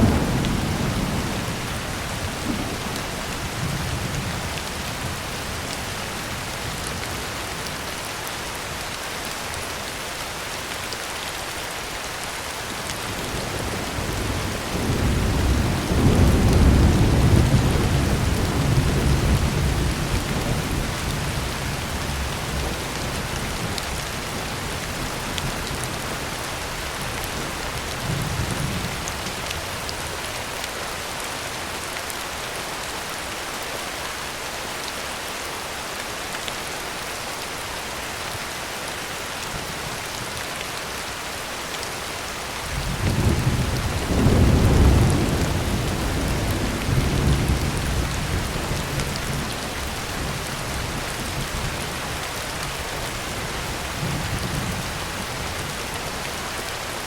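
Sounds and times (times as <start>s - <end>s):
thunder rumbling: 0.0s - 5.2s, 13.1s - 25.8s, 42.7s - 55.8s
heavy rain on a tin roof: 0.0s - 57.0s.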